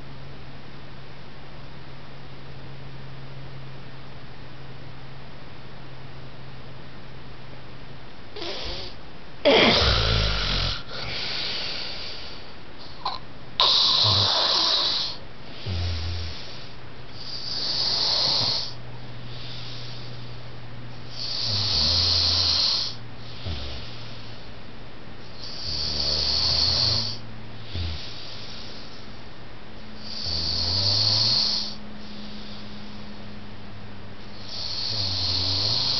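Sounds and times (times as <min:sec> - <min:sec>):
steady low hum: 0:00.0 - 0:35.9
man snoring heavily: 0:08.4 - 0:12.2, 0:13.0 - 0:20.3, 0:21.1 - 0:24.5, 0:25.2 - 0:29.0, 0:30.0 - 0:33.1, 0:34.3 - 0:35.9.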